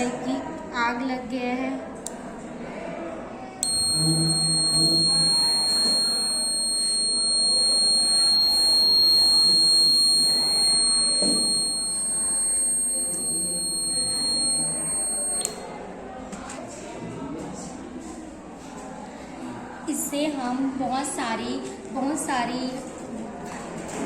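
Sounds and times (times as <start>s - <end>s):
high-pitched electronic buzzer tone: 3.6s - 15.6s.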